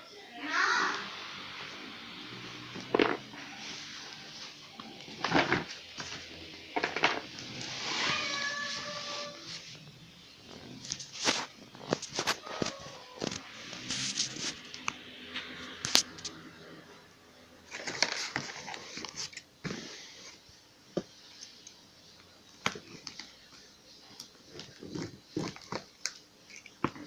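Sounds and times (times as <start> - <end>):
packaging rustling: 10.8 - 16.3.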